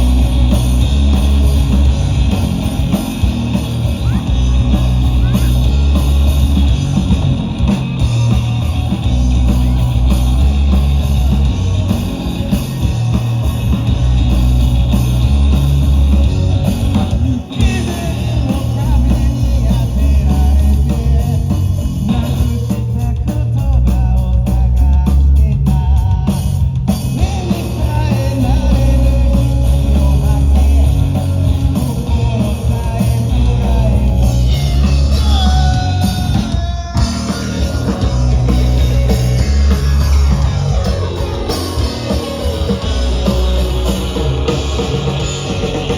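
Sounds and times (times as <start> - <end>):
live rock band playing: 0.0 - 45.9
drum hits: 33.8 - 45.9.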